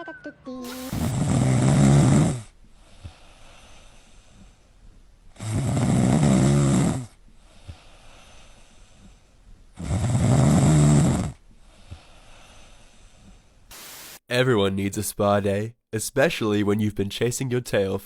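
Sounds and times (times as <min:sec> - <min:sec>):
dog snoring: 0:00.7 - 0:02.5, 0:05.4 - 0:07.2, 0:09.8 - 0:11.4.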